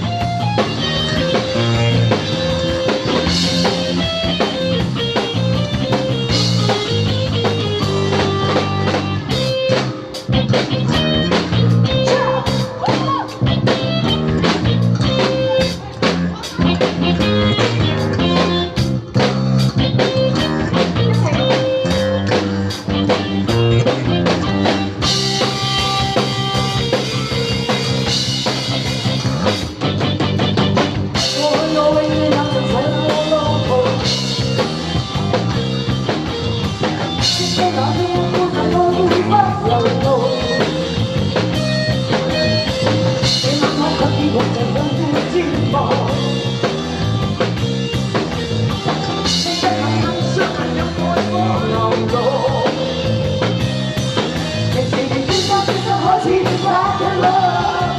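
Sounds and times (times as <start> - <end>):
rock and roll music: 0.0 - 57.9
person singing: 10.7 - 18.8, 31.1 - 34.6, 37.2 - 41.5, 42.4 - 47.0, 49.2 - 53.6, 54.6 - 57.9.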